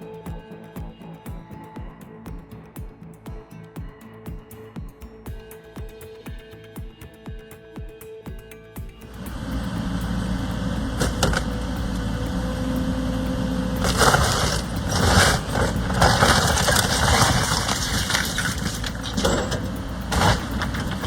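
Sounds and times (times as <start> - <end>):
diesel engine running: 9.2 - 21.0
structure crunching and breaking: 10.9 - 12.1, 13.8 - 21.0.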